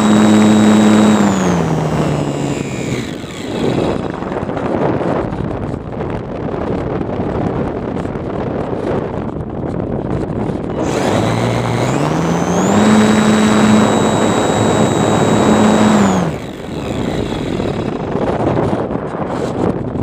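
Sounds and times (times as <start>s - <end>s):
model plane motor whine: 0.0s - 4.8s, 10.6s - 19.6s
wind on microphone: 0.0s - 20.0s.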